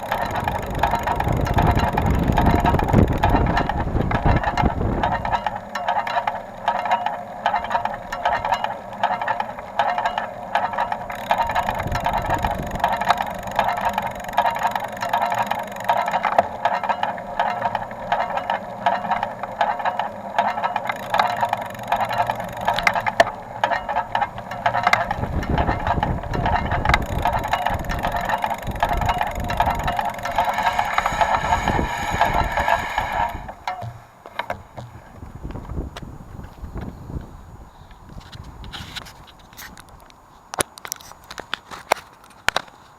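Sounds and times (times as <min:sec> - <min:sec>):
bicycle wheel ticking rattle: 0:00.0 - 0:42.7
low rumbling noise: 0:07.2 - 0:37.6.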